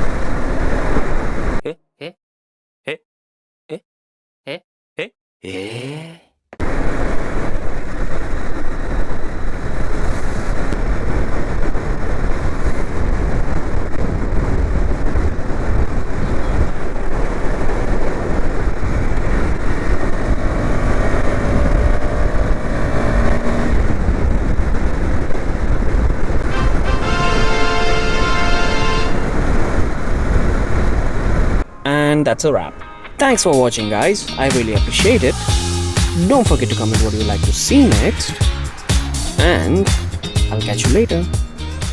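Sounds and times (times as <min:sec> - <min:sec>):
wind rush on microphone: 0:00.0 - 0:01.6, 0:06.6 - 0:31.8.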